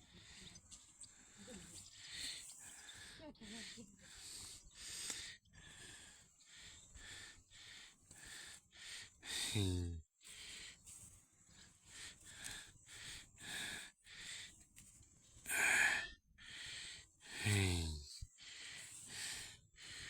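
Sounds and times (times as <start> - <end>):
heavy wheezy breathing: 2.0 - 14.6, 15.4 - 20.0
low voiced grunt: 15.5 - 16.1.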